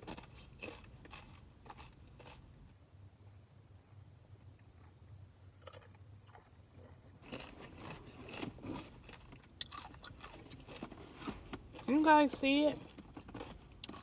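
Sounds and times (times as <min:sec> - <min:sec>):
crunching tortilla chip: 0:00.0 - 0:02.4, 0:07.3 - 0:12.1, 0:12.8 - 0:14.0.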